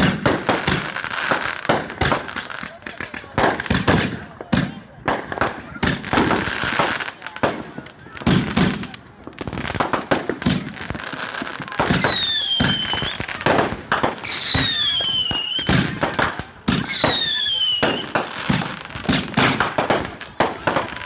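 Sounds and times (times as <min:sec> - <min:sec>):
firework bangs and crackles: 0:00.0 - 0:21.0
firework whistles falling in pitch: 0:11.9 - 0:13.3, 0:14.2 - 0:15.8, 0:16.8 - 0:18.2.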